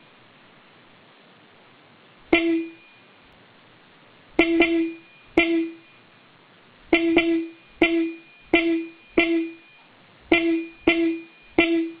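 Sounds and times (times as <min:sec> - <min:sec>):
car horn toots: 0:02.4 - 0:02.8, 0:04.4 - 0:05.8, 0:06.9 - 0:09.6, 0:10.3 - 0:12.0.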